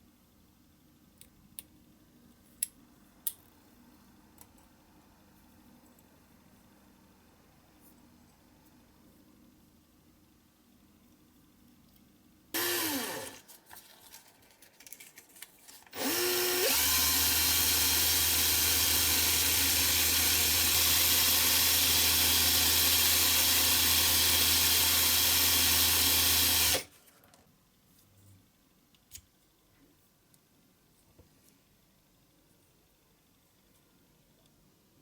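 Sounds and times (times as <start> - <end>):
electric power tool spinning: 12.6 - 13.5, 15.9 - 26.9.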